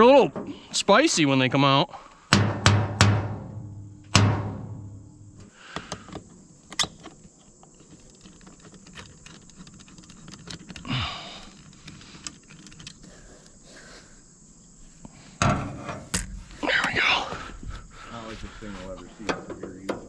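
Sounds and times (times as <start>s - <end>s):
sharp knock: 16.1s - 16.7s.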